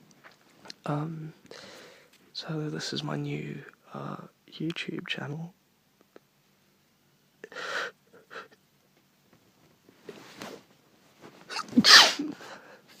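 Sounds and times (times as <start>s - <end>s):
woman sneezing: 11.5s - 12.4s.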